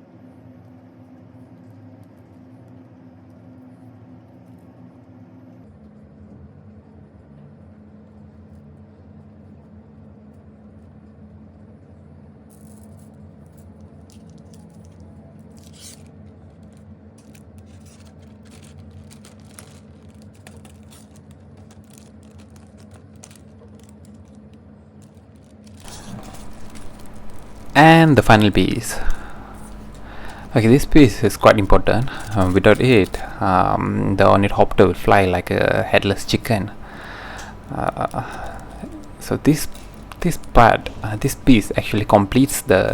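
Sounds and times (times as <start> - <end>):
steady low hum: 0.0 - 42.9
toy parts scraping and crinkling: 12.5 - 42.9.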